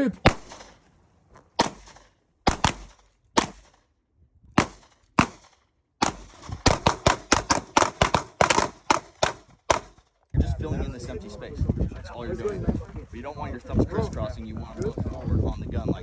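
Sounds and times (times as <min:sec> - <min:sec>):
pistol gunshots: 0:00.0 - 0:00.8, 0:01.6 - 0:03.8, 0:04.6 - 0:10.0.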